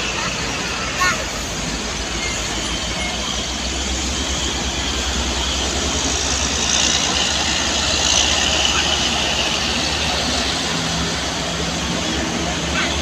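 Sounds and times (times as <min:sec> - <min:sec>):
bus diesel engine rumbling: 0:00.0 - 0:13.0
engine hiss: 0:00.0 - 0:13.0.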